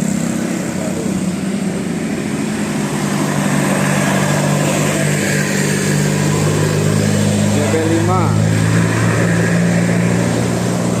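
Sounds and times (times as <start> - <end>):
bus engine droning: 0.0 - 11.0.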